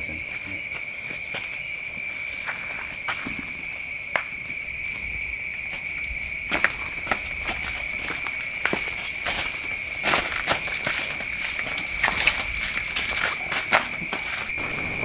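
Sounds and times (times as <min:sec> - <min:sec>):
crickets chirring: 0:00.0 - 0:15.0
footsteps crunching on ground: 0:00.1 - 0:14.9.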